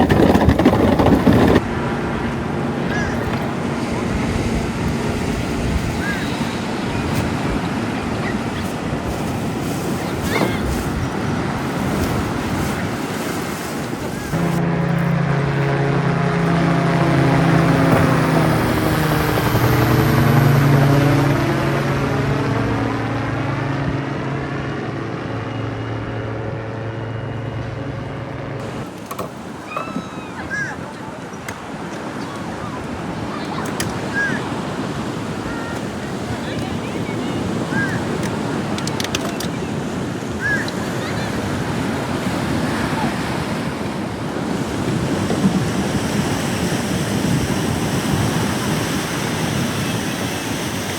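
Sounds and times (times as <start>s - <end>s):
wind buffeting microphone: 0.0s - 25.6s
surf: 0.0s - 26.6s, 28.6s - 50.9s
engine drone: 0.0s - 30.0s, 32.4s - 50.9s
wind: 0.0s - 50.9s.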